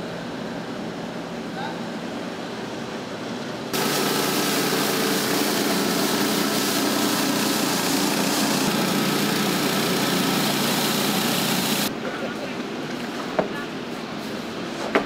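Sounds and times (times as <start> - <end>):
loud hiss: 3.8 - 11.9
small engine running: 3.8 - 11.9.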